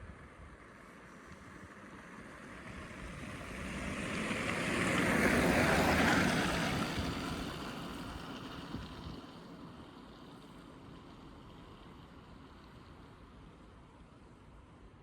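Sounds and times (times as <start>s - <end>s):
vehicle passing by: 2.1s - 9.2s.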